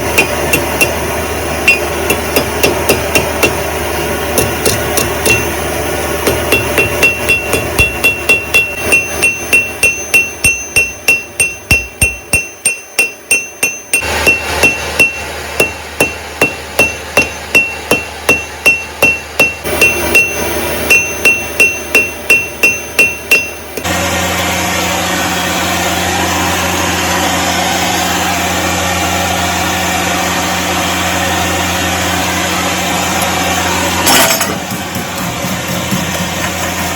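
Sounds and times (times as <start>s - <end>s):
hammer striking steel on anvil: 0.0s - 3.7s, 4.3s - 23.9s
steady low hum: 0.0s - 36.9s.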